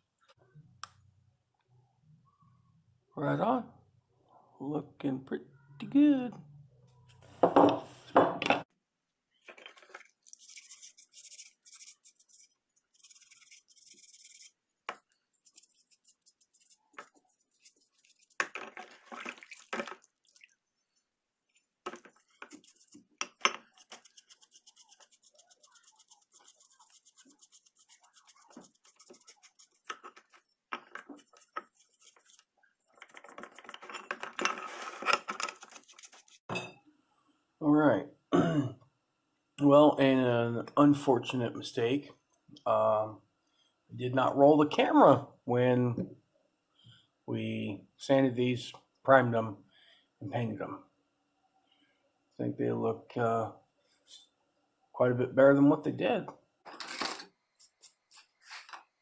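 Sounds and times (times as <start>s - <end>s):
brushing and scraping wood: 9.5s - 20.1s, 21.4s - 36.4s, 57.0s - 58.9s.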